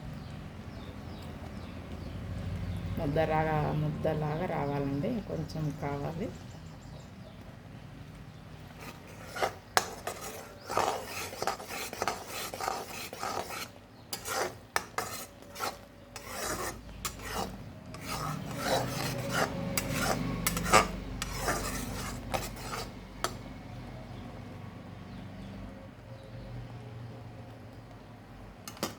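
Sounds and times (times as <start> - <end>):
ladle scraping a pan: 8.6 - 23.4.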